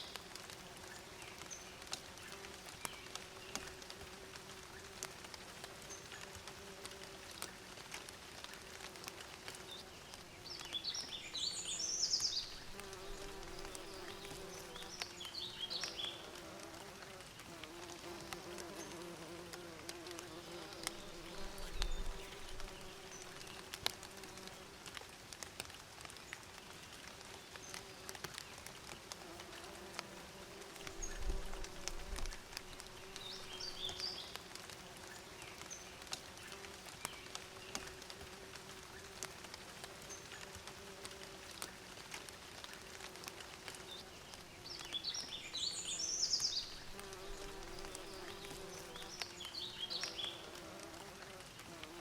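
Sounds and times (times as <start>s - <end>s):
bees buzzing: 46.4s - 52.0s.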